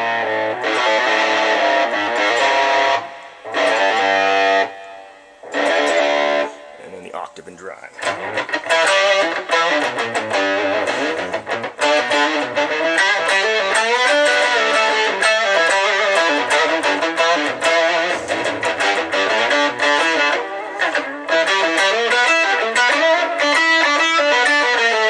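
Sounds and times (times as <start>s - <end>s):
overdriven electric guitar riffs: 0.0s - 25.0s.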